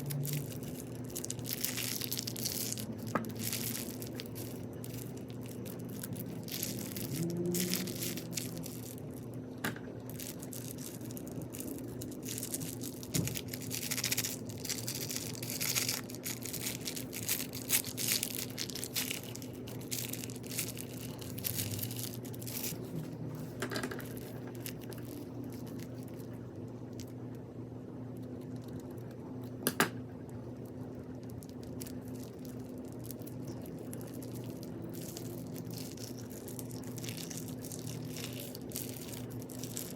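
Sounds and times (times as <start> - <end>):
crunchy slime squeezed by hand: 0.0 - 23.1, 31.2 - 39.9.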